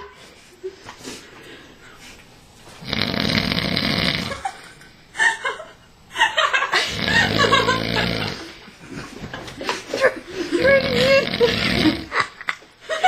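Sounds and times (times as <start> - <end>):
man snoring loudly: 2.8 - 4.4, 6.9 - 8.5, 10.6 - 12.1.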